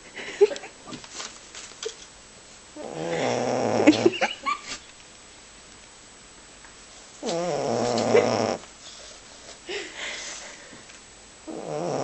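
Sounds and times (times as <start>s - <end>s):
dog snoring loudly: 2.8s - 4.2s, 7.2s - 8.6s, 11.4s - 12.0s.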